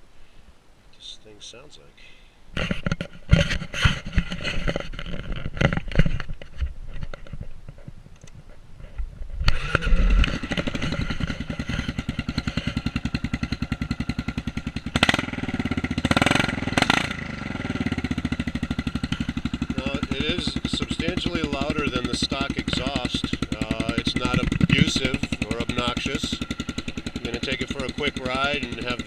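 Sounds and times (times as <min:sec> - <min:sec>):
motorcycle engine idling and revving: 0:09.5 - 0:29.0.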